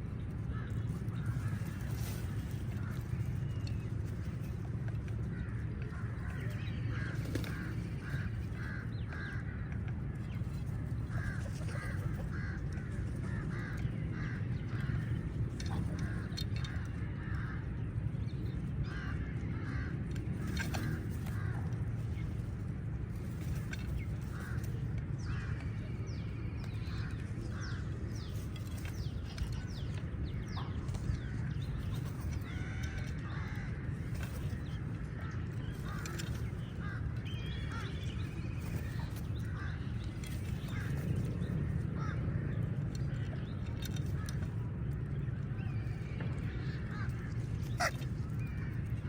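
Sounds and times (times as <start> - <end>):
steady low rumble: 0.0 - 49.0
crows cawing: 5.2 - 10.1, 11.1 - 17.8, 18.8 - 22.4, 23.3 - 41.1, 42.0 - 42.5, 46.1 - 49.0.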